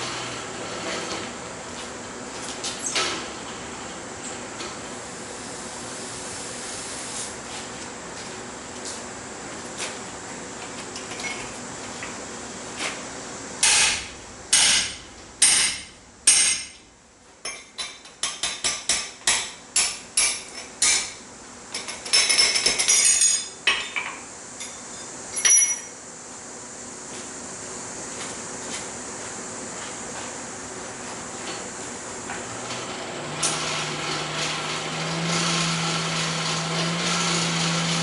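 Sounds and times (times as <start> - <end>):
hammer striking steel on anvil: 13.6 - 16.8, 17.5 - 21.2.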